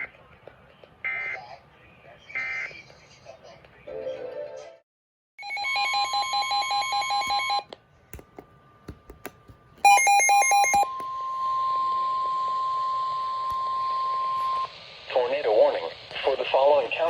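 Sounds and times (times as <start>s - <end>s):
steady warning tone: 9.9s - 17.0s
radio hiss: 14.6s - 17.0s.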